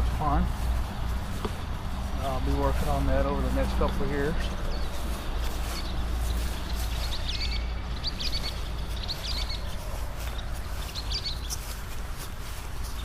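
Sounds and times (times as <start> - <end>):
low outdoor rumble: 0.0 - 13.0
small bird chirping: 4.3 - 13.0.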